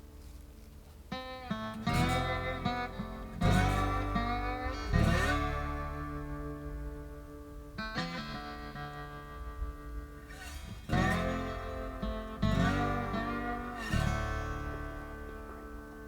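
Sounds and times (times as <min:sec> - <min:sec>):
guitar chords strummed: 0:00.0 - 0:16.0.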